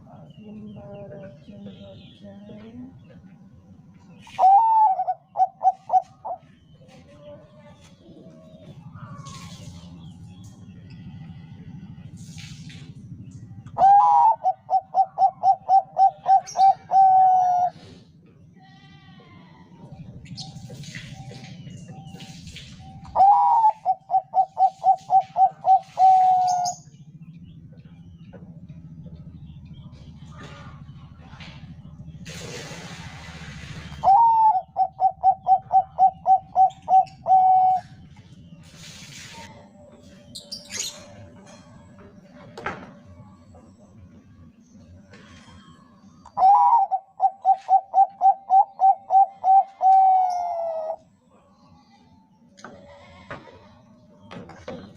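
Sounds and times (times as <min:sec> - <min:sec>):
dove cooing: 0:04.1 - 0:09.7, 0:13.6 - 0:18.2, 0:20.0 - 0:26.9, 0:32.8 - 0:41.6, 0:45.0 - 0:51.1.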